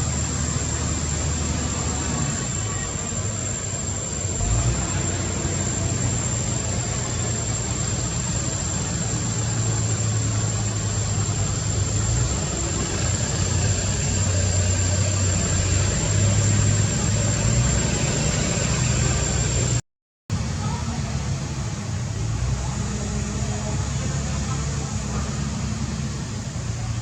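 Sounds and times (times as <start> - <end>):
high-pitched whine: 0.0 - 19.8
vehicle engine idling: 0.0 - 27.0.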